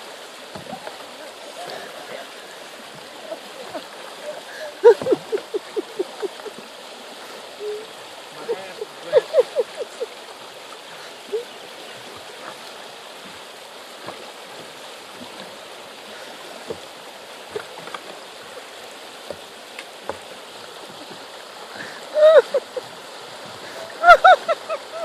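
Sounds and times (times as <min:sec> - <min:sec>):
river current running: 0:00.0 - 0:25.0
small clicks and splashes: 0:00.4 - 0:02.2, 0:11.0 - 0:22.0.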